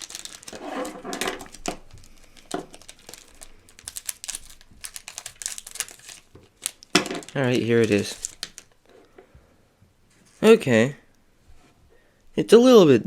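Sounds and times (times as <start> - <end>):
plastic wrapper crinkling: 0.0 - 9.1.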